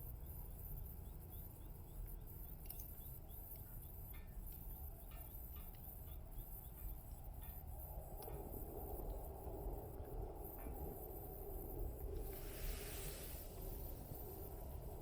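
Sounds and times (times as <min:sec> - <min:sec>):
low steady rumble: 0:04.4 - 0:15.0.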